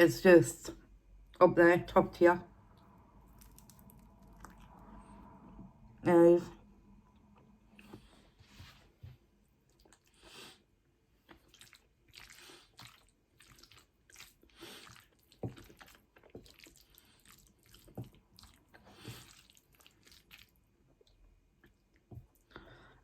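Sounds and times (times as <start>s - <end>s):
wet chewing sounds: 2.8s - 5.3s, 9.5s - 22.6s.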